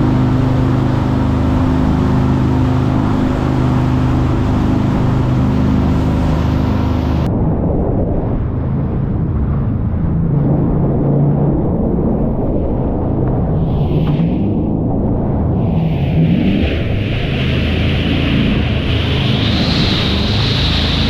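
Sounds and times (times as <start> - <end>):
boat engine humming: 0.0 - 7.3, 14.7 - 21.0.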